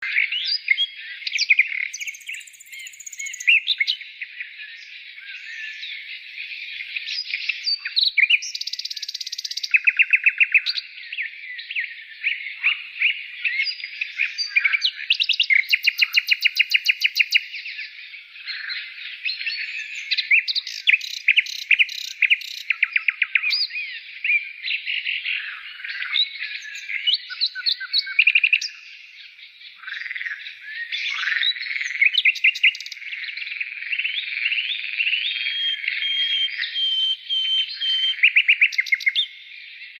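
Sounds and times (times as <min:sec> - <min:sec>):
small birds chirping: 0:00.0 - 0:40.0
rapid bird trills: 0:12.6 - 0:40.0.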